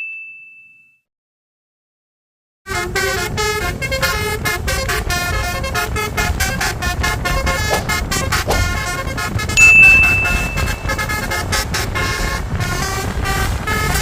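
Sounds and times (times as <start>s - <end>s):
bell ding: 0.0s - 1.0s, 9.6s - 11.0s
bus horn playing a tune: 2.7s - 14.0s
low rumble: 6.0s - 13.6s.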